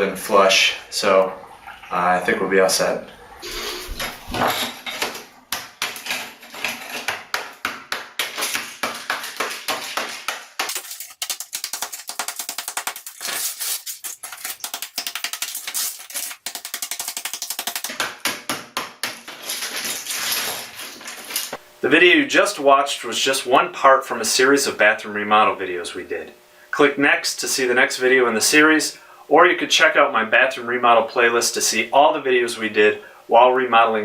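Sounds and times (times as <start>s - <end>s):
hammer and chisel chipping tile: 3.5s - 20.8s.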